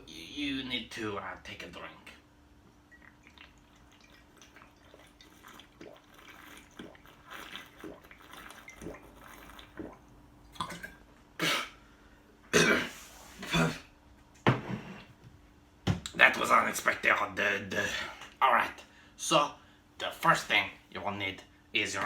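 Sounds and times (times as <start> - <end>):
faint liquid sounds: 1.4 - 11.3
person gulping: 3.0 - 11.8, 12.5 - 13.8.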